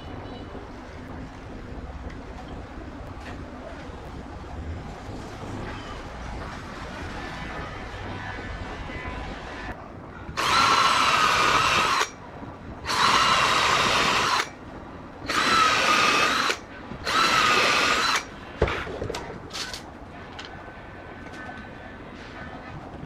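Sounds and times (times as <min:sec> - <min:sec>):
power tool motor whine: 0:10.4 - 0:12.1, 0:12.9 - 0:14.5, 0:15.3 - 0:18.3.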